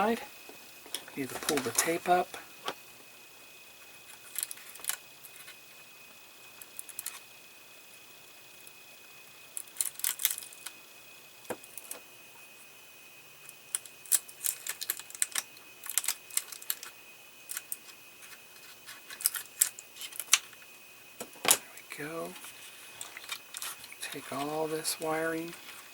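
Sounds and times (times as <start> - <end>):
tape pulled off wires: 4.0 - 5.6, 22.3 - 24.6.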